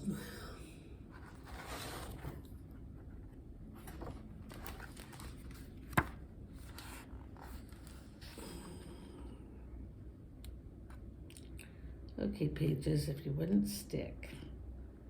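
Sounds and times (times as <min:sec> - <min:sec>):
paper pages rustling: 0:03.8 - 0:08.4.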